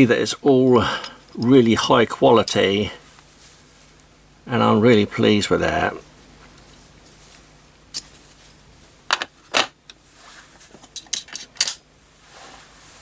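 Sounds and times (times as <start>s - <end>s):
screwdriver bits clinking: 10.9s - 11.8s.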